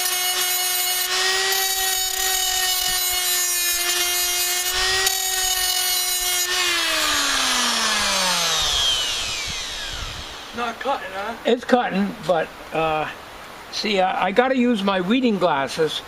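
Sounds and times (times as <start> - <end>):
cut-off grinder whining: 0.0 - 11.0
grinding on metal: 0.0 - 11.0.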